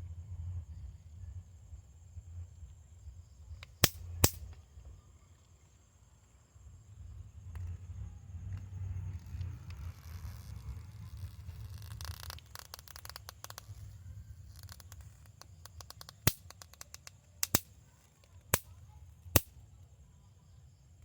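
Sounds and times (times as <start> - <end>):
loud sharp zapper pops: 3.8 - 4.6, 19.3 - 19.5.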